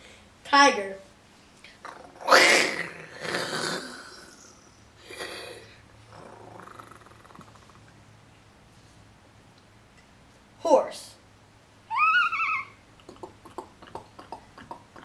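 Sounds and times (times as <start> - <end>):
boy imitating tiger roar: 1.9 - 4.4.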